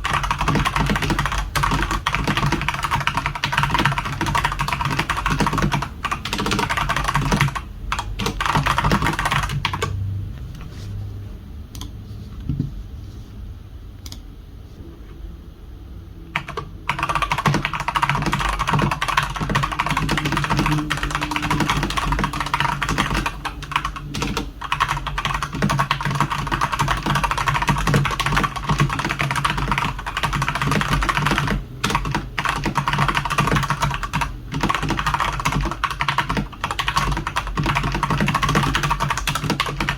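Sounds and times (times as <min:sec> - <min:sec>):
fast typing on mechanical keyboard: 0:00.0 - 0:10.0, 0:16.4 - 0:39.9.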